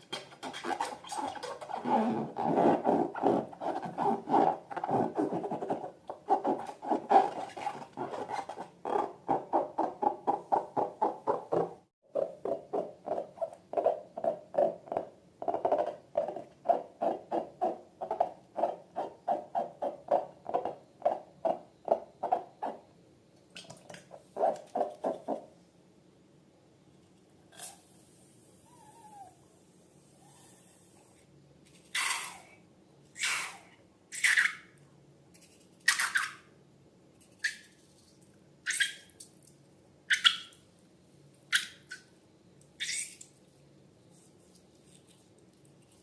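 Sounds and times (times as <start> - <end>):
squeaky squelches of balloons and slime: 0.0 - 22.8, 35.4 - 36.5, 37.2 - 39.4, 42.8 - 43.5.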